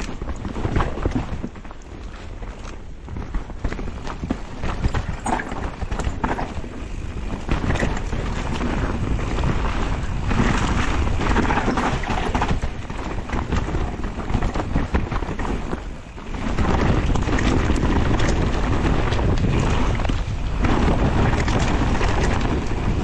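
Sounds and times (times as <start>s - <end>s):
bike rattling: 0.0s - 23.0s
bike tyre noise: 0.0s - 23.0s
wind buffeting microphone: 0.0s - 23.0s.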